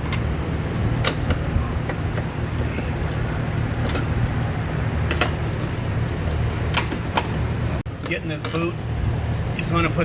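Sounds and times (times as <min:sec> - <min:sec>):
low machinery rumble: 0:00.0 - 0:10.0.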